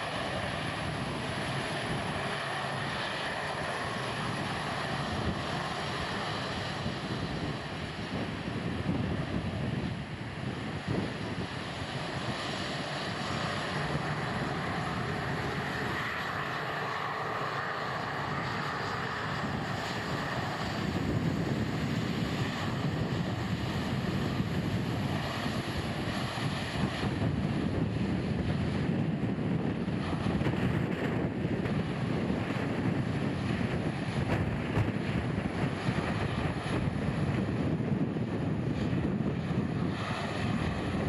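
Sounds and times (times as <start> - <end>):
jet engines roaring: 0.0 - 41.0
wind buffeting microphone: 0.0 - 41.0.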